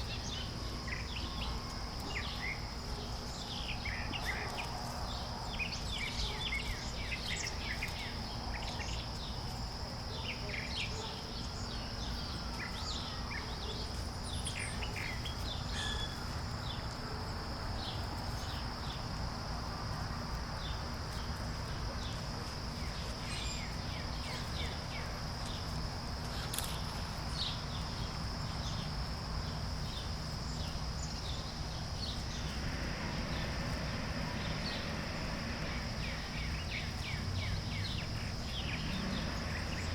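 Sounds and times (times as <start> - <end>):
low background rumble: 22.7 - 39.9.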